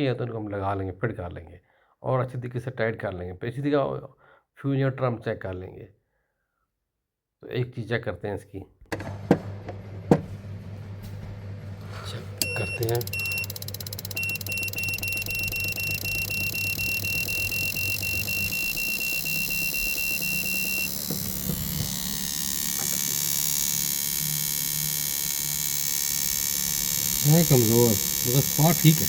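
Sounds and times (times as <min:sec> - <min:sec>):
rapid beeps: 0:12.4 - 0:22.8
steady electrical hum: 0:12.4 - 0:29.0
spark plug fast ticking: 0:13.5 - 0:29.0.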